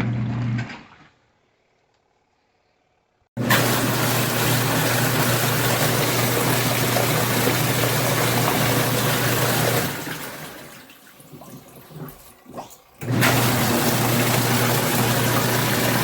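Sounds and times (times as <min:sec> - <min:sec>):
churning water: 0:03.4 - 0:16.0
washing machine motor hum: 0:03.4 - 0:16.0.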